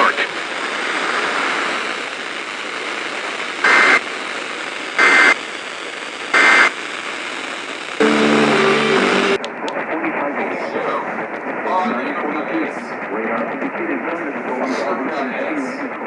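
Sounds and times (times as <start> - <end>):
radio static: 0.0 - 5.4, 6.3 - 6.8, 7.9 - 10.2
low steady buzz: 8.0 - 9.4.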